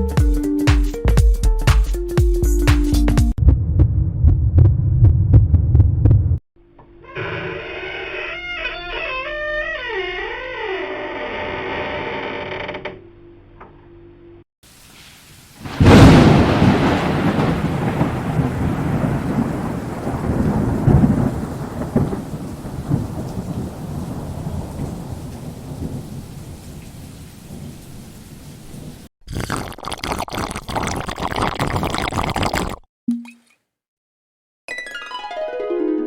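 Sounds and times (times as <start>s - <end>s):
thunder rumbling: 3.4s - 6.4s, 15.6s - 29.1s
rain: 14.6s - 29.1s.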